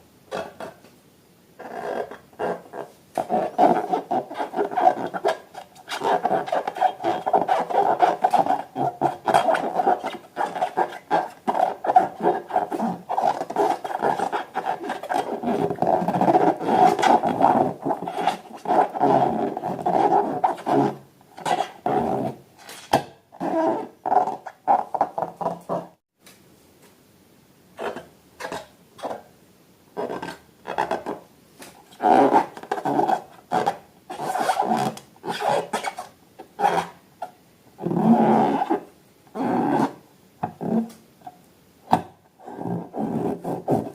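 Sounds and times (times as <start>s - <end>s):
rubber balloons squeaking: 1.6s - 22.4s, 32.0s - 37.0s.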